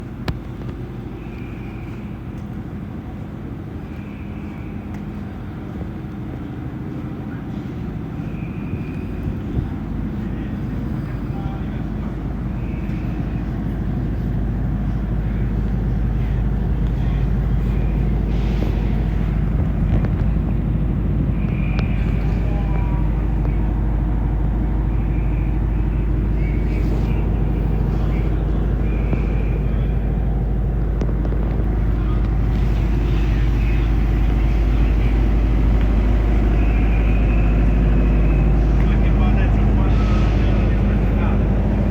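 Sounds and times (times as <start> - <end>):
constant noise: 0.0 - 41.9
steady low rumble: 0.0 - 41.9.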